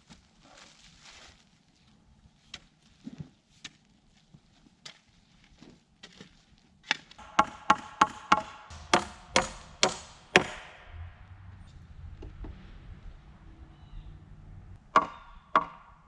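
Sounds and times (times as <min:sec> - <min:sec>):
hammer striking metal: 0:07.2 - 0:12.4, 0:14.8 - 0:16.0.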